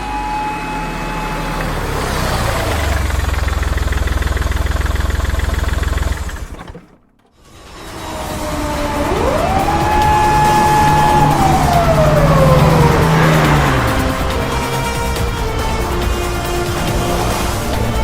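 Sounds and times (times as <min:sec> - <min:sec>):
siren tone: 0:00.0 - 0:01.8, 0:07.8 - 0:18.0
truck engine idling: 0:00.0 - 0:18.0.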